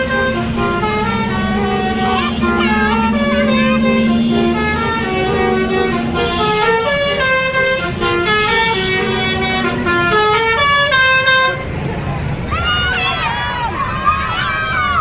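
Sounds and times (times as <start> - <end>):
bus horn playing a melody: 0.0 - 11.8
low rumble: 0.3 - 11.8.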